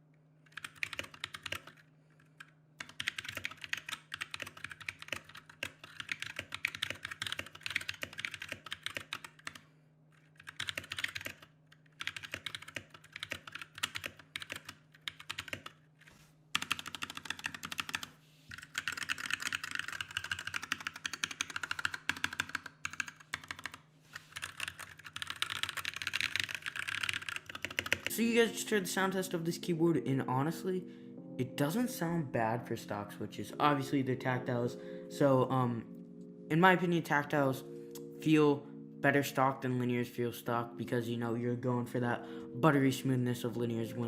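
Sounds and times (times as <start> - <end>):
mechanical keyboard typing: 0.4 - 9.6, 10.2 - 15.8, 16.5 - 28.2.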